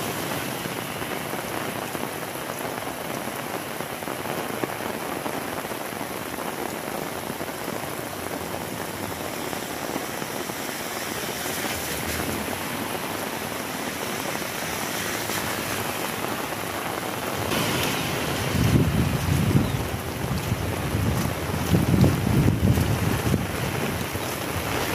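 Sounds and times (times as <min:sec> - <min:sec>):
heavy rain falling: 0:00.0 - 0:24.9
wind buffeting microphone: 0:17.3 - 0:24.9.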